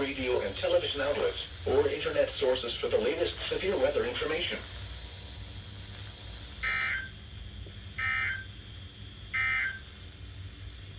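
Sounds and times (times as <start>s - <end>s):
steady low hum: 0.0s - 10.9s
warbling digital data tones: 6.6s - 7.2s, 8.0s - 8.5s.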